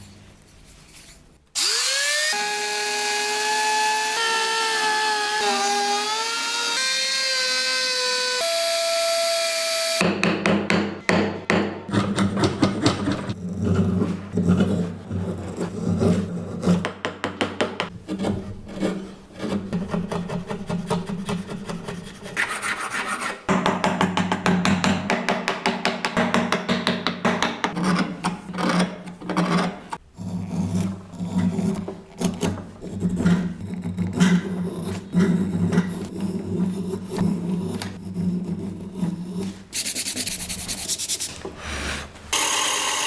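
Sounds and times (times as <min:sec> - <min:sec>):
hand filing wood: 0:30.2 - 0:42.1.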